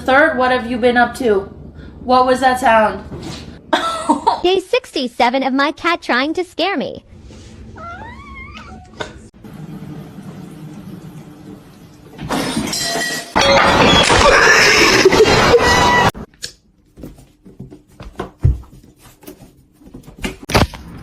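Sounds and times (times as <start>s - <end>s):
crashing and shattering: 12.3s - 14.8s
knocks and clinks: 12.4s - 14.6s.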